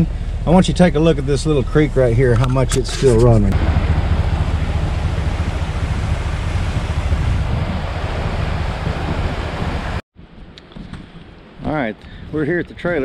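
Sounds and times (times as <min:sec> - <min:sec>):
creek rushing: 0:03.5 - 0:10.0.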